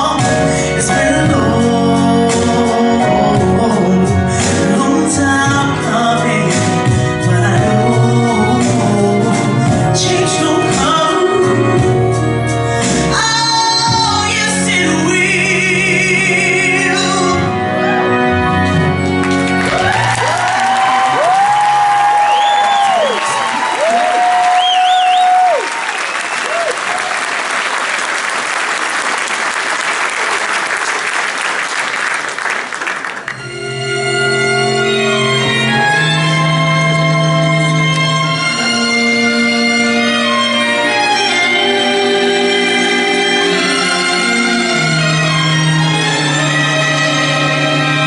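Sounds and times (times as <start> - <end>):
woman singing soul: 0.0 - 12.1, 13.0 - 17.6
band playing: 0.0 - 48.0
audience applauding: 19.1 - 33.6
strings playing sustained notes: 33.3 - 48.0.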